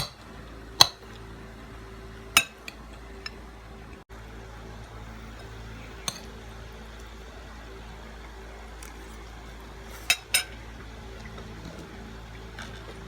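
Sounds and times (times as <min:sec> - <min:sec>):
low hum: 0:00.0 - 0:13.0
utensil clinking against dish: 0:02.4 - 0:03.4, 0:10.0 - 0:10.6.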